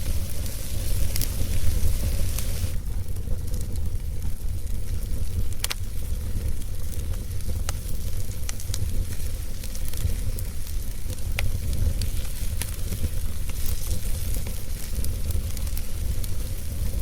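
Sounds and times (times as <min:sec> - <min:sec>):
low rumble: 0:00.0 - 0:05.4
steady hiss: 0:00.0 - 0:17.0
wood fire crackling: 0:00.0 - 0:17.0.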